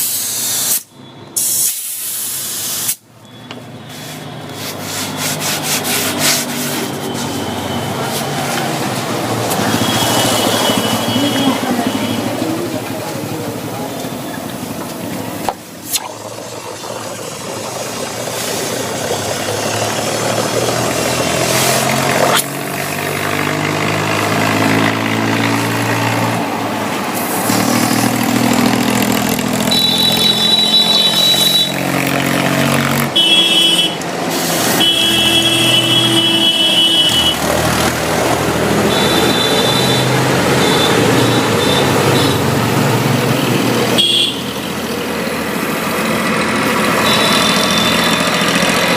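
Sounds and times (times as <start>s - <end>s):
engine running: 6.5s - 33.2s.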